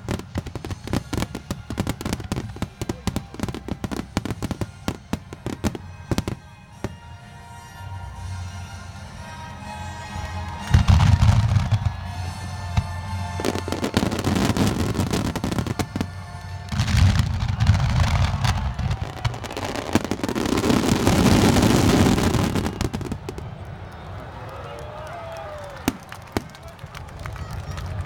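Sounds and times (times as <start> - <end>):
fireworks booming and crackling: 0.0 - 7.0, 10.5 - 23.7
music from loudspeakers: 3.4 - 23.1.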